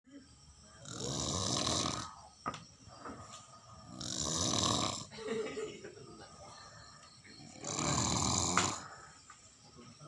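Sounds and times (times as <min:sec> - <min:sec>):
quiet breathing: 0:00.5 - 0:05.1, 0:06.3 - 0:10.0
person snoring loudly: 0:00.8 - 0:02.3, 0:03.8 - 0:05.1, 0:07.4 - 0:09.0.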